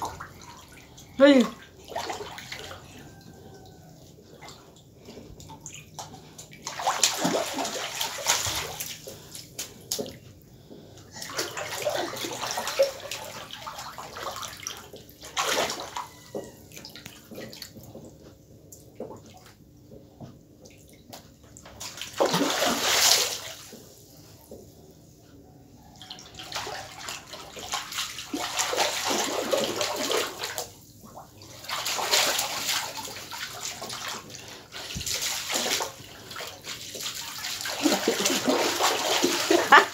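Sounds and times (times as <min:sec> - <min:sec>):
water splashing and sloshing: 0:00.0 - 0:39.9.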